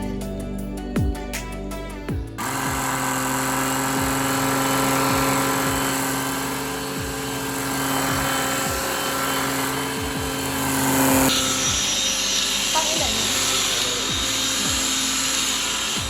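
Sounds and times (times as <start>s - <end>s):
vacuum cleaner motor whirring: 2.4s - 16.0s.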